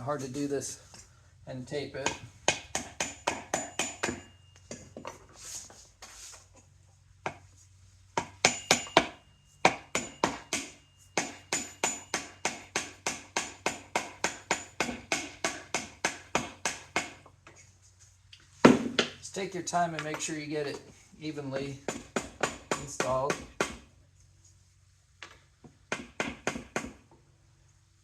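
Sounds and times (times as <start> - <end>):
hammer tapping metal: 2.0 - 5.0, 8.2 - 17.2.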